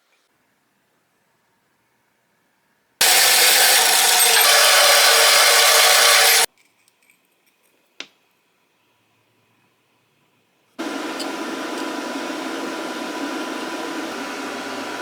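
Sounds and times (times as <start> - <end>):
power tool cutting metal: 3.0 - 6.5, 10.8 - 15.0.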